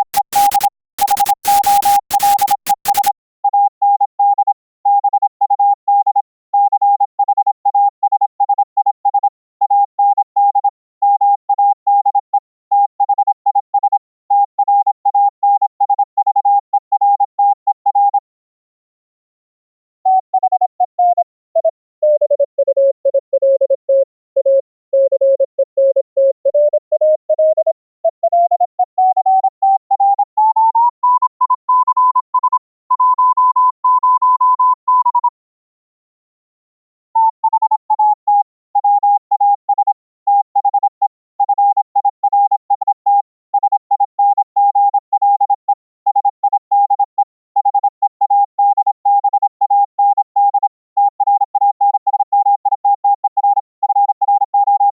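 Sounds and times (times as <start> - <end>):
morse code tones: 0.0 - 3.1.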